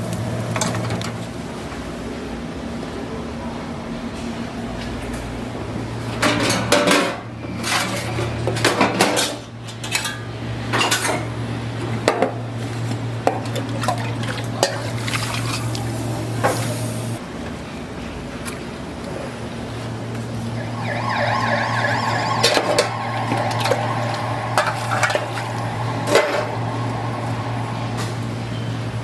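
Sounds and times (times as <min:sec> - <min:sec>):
dishes and utensils clattering: 0:06.2 - 0:11.3
steady low hum: 0:20.0 - 0:29.0.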